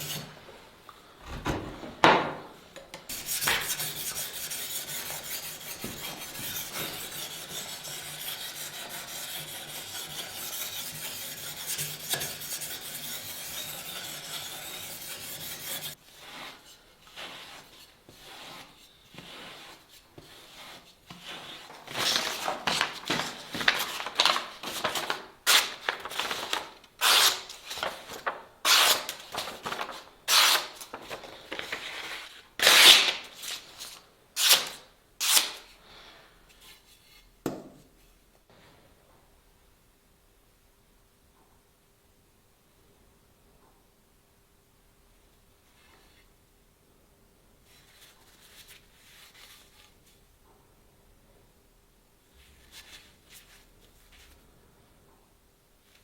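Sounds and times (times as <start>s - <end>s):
abrasive rasping on knife: 3.1s - 16.6s.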